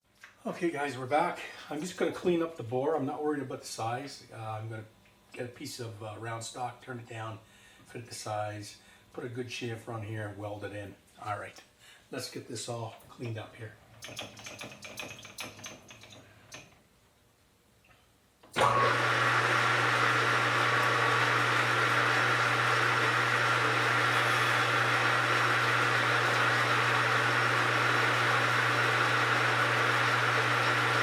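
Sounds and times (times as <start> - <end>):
metal lathe humming and whining: 18.6 - 31.0.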